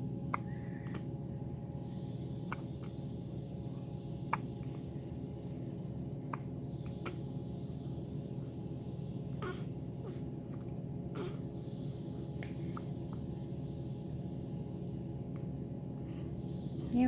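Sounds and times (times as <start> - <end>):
hiccups: 9.4 - 10.2.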